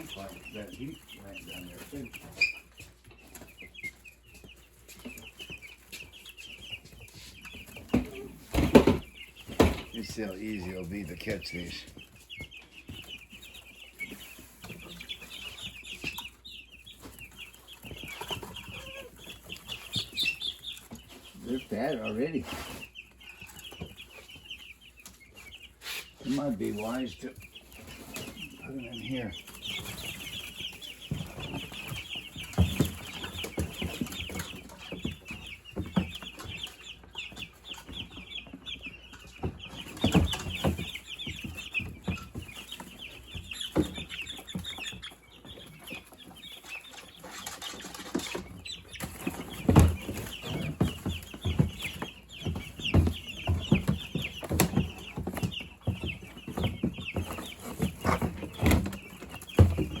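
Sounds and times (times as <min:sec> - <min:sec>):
chicks peeping: 0:00.0 - 1:00.0
handling knocks and thumps: 0:06.8 - 0:13.2, 0:27.7 - 0:36.7, 0:47.4 - 1:00.0.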